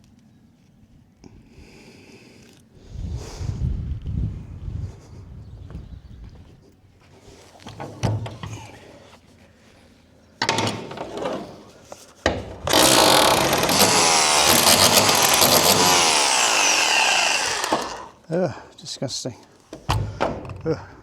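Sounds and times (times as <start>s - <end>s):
power tool cutting: 12.7s - 18.2s.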